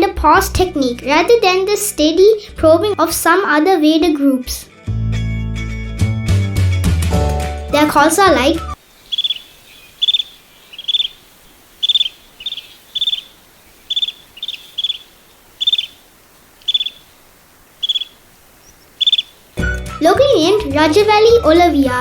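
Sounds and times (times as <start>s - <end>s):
bird rippling trills: 8.8s - 19.6s.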